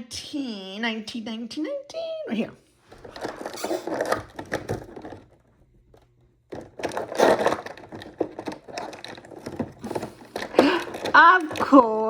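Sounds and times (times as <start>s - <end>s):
packaging crackling and crinkling: 2.9s - 11.8s
cardboard door torn open by hand: 3.0s - 5.4s, 6.5s - 11.8s.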